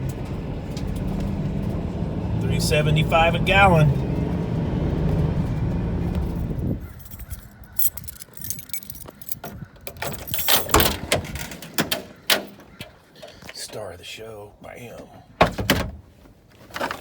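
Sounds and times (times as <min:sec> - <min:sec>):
vehicle engine and road rumble: 0:00.0 - 0:13.9
keys jangling: 0:06.8 - 0:11.0.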